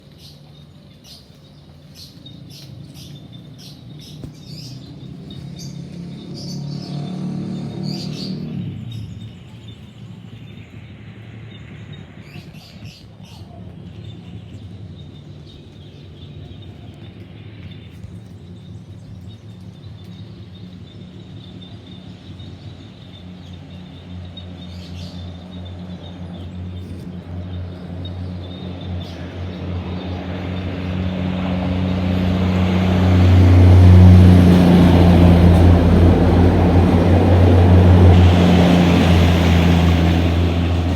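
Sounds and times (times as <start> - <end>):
birds chirping: 0.0 - 40.9
steady low rumble: 8.4 - 40.9.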